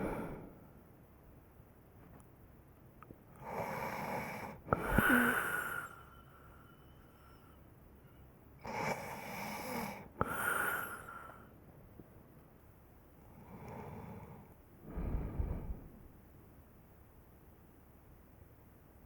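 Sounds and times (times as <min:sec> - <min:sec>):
person snoring: 0:00.0 - 0:00.6
thin whistling tone: 0:06.1 - 0:08.3.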